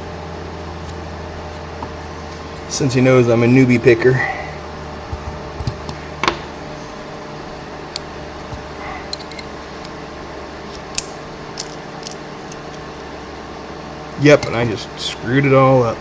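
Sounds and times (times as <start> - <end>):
fan hum: 0.0 - 16.0
metal lock parts clicking: 9.1 - 9.9.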